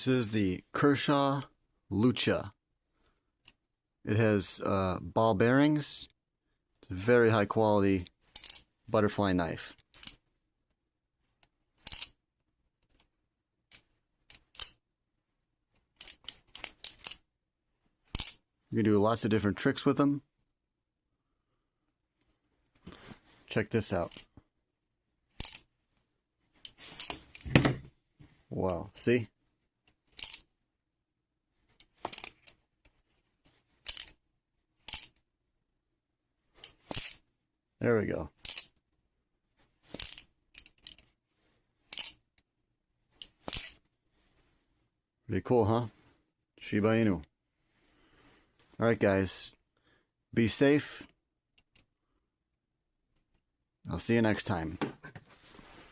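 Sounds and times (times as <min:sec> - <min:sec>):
butterfly knife handles clacking: 0:41.9 - 0:42.2.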